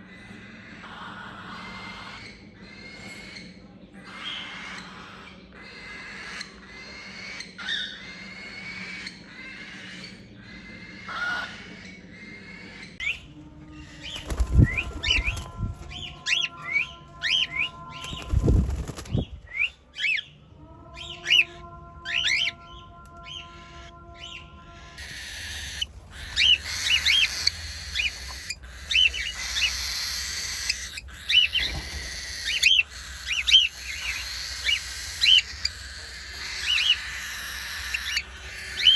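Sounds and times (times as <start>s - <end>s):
cockatiels chirping and squawking: 0.1s - 20.4s, 21.0s - 38.9s
steady humming tone: 8.0s - 38.9s.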